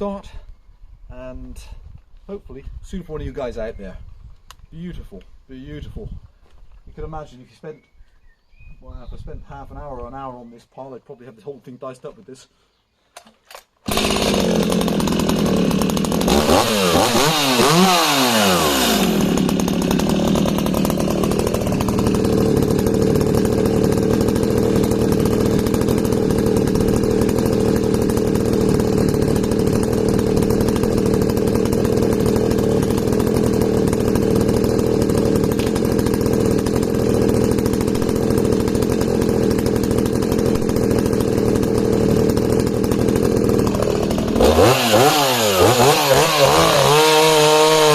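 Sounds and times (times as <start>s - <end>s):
chainsaw revving and cutting wood: 13.8s - 47.9s.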